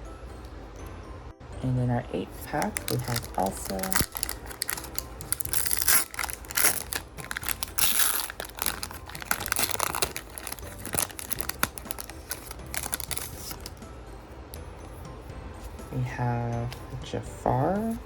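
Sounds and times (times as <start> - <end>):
foil card pack crinkling: 2.4 - 13.7.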